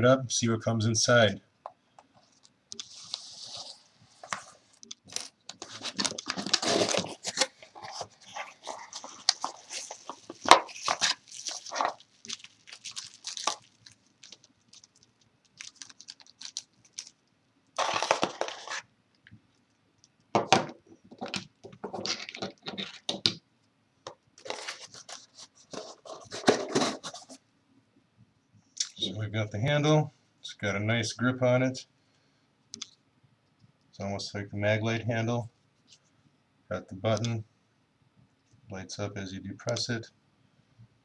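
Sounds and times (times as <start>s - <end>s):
packaging crinkling and tearing: 2.8s - 17.2s, 17.8s - 18.9s, 24.4s - 27.4s.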